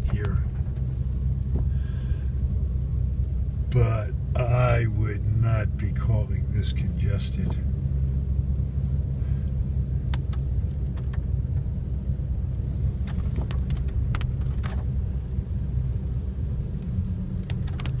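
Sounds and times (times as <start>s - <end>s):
car road and engine rumble: 0.0s - 18.0s.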